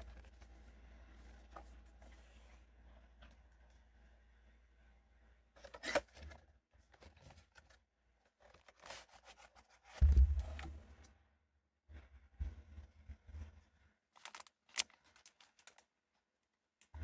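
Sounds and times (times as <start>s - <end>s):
packaging crinkling and rustling: 8.4s - 10.7s, 14.2s - 15.9s
dull thump: 10.0s - 10.8s.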